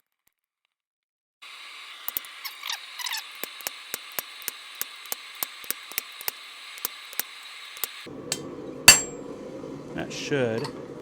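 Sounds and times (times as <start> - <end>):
hammer tapping hot steel: 8.3 - 9.2.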